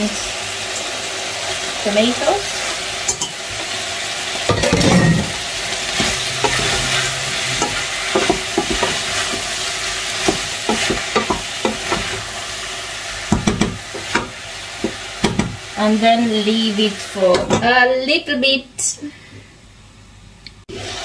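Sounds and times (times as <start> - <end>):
meat sizzling in a pot: 0.0 - 18.4, 20.7 - 21.0
spoon scraping and knocking pot: 6.0 - 9.4, 10.2 - 12.2.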